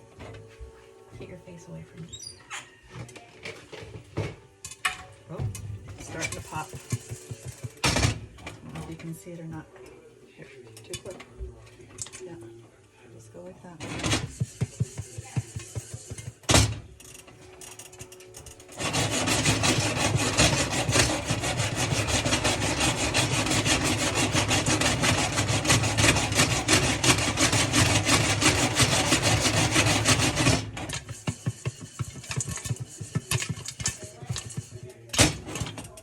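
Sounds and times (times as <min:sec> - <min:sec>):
popcorn kernels popping: 0:06.1 - 0:08.4, 0:13.8 - 0:36.0
pan shaken on stovetop: 0:31.0 - 0:35.1.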